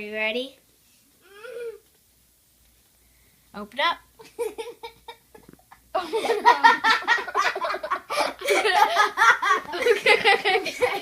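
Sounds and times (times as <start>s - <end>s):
hearty laughing: 4.3s - 11.0s.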